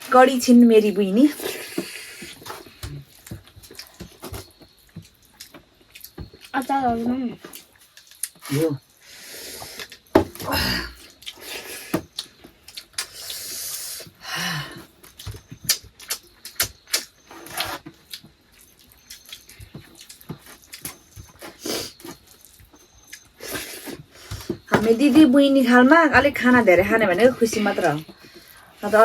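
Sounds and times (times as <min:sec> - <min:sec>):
wet chewing and lip smacks: 0:12.1 - 0:14.1, 0:15.0 - 0:24.0.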